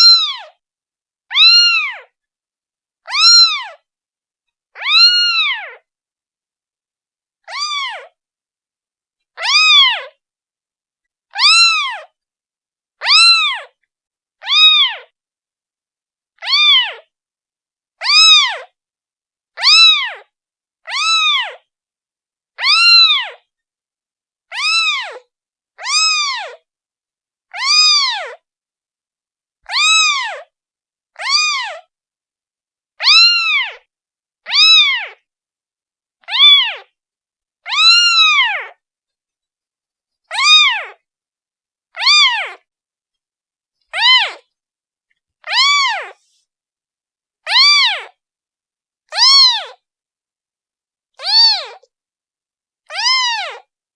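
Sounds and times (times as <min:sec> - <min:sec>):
kitten meowing: 0:00.0 - 0:00.6, 0:01.3 - 0:02.1, 0:03.1 - 0:03.8, 0:04.8 - 0:05.8, 0:07.5 - 0:08.1, 0:09.4 - 0:10.2, 0:11.4 - 0:12.1, 0:13.0 - 0:13.8, 0:14.4 - 0:15.1, 0:16.4 - 0:17.1, 0:18.0 - 0:18.7, 0:19.6 - 0:21.6, 0:22.6 - 0:23.4, 0:24.5 - 0:26.6, 0:27.5 - 0:28.4, 0:29.6 - 0:30.5, 0:31.2 - 0:31.9, 0:33.0 - 0:35.2, 0:36.2 - 0:36.9, 0:37.6 - 0:38.8, 0:40.3 - 0:41.0, 0:41.9 - 0:42.6, 0:43.9 - 0:44.5, 0:45.4 - 0:46.3, 0:47.5 - 0:48.2, 0:49.1 - 0:49.8, 0:51.2 - 0:51.9, 0:52.9 - 0:53.7.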